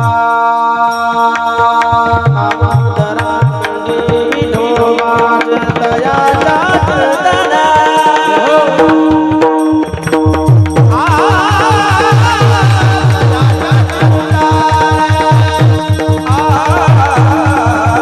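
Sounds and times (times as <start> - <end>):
person singing ornamented melody: 0.0 - 10.1, 10.8 - 18.0.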